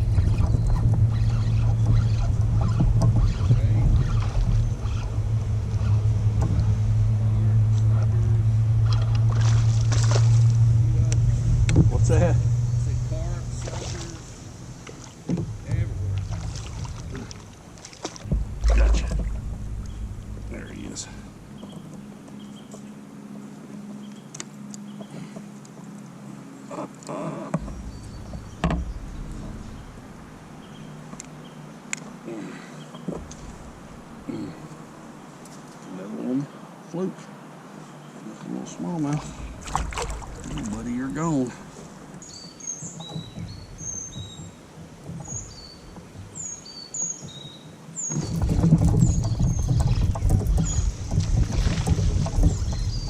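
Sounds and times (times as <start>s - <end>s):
wind rumble on microphone: 0.0s - 22.6s, 27.6s - 31.6s, 47.2s - 53.0s
steady low hum: 0.0s - 35.7s, 38.6s - 42.3s, 48.2s - 53.0s
birds chirping: 0.0s - 53.0s
rustling splash: 8.9s - 10.6s, 13.5s - 15.3s, 16.1s - 21.6s, 39.1s - 41.0s, 48.0s - 53.0s.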